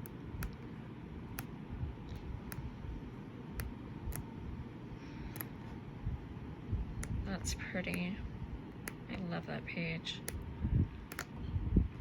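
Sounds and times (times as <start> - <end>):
sharp clicks: 7.0 - 9.2, 10.2 - 11.4.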